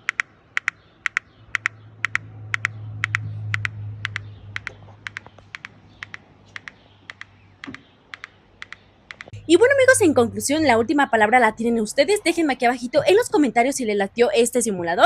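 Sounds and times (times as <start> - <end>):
sharp clicks in pairs: 0.0 - 9.4
low electronic hum: 9.3 - 13.6.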